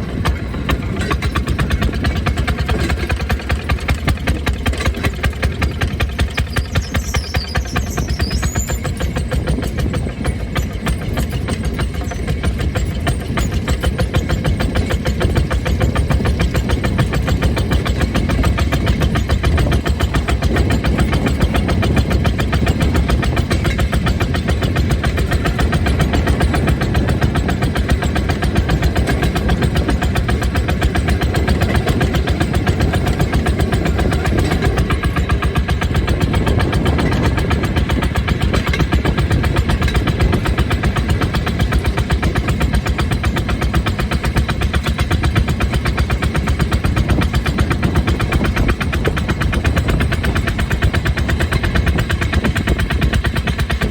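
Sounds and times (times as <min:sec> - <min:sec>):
small engine chugging: 0:00.0 - 0:53.9.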